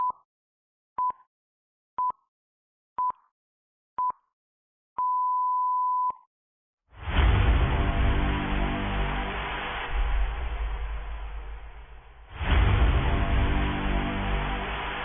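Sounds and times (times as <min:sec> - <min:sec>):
electronic countdown beeps: 0:00.0 - 0:00.2, 0:01.0 - 0:01.3, 0:02.0 - 0:02.3, 0:03.0 - 0:03.3, 0:04.0 - 0:04.3, 0:05.0 - 0:06.3.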